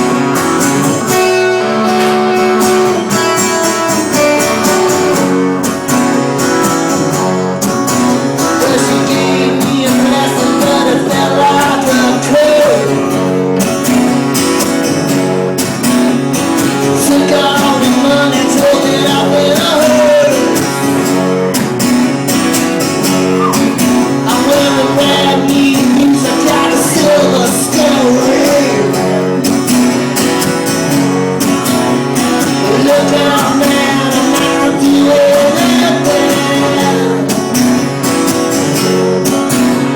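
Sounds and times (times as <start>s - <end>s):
strummed acoustic guitar: 0.0s - 39.9s
person singing: 8.3s - 13.3s, 16.8s - 21.1s, 23.4s - 29.5s, 31.9s - 37.5s.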